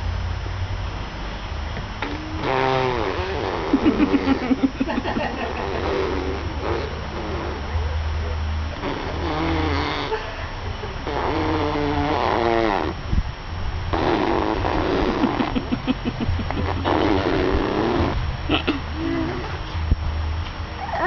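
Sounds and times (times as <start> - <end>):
man making mouth sound effects: 2.0 - 4.9, 5.5 - 10.1, 11.0 - 13.0, 13.9 - 19.6.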